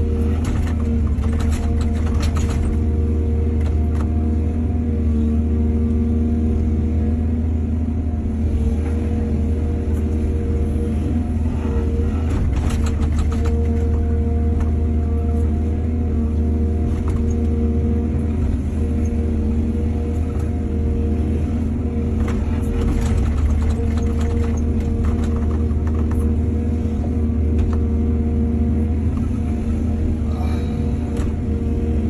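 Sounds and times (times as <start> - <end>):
excavator diesel engine running: 0.0 - 32.0.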